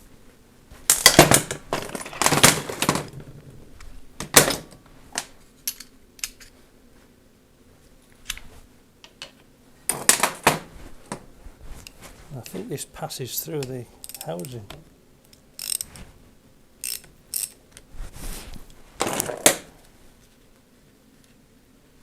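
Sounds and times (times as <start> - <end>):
metallic clicks of hand tools: 13.6 - 15.9, 16.8 - 17.6.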